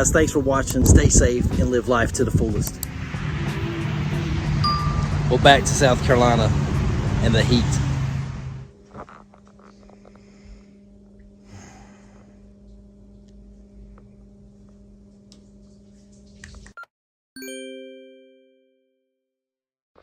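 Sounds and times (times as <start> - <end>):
low steady hum: 0.0 - 16.7
bell-like chime: 4.6 - 5.6, 17.4 - 19.0.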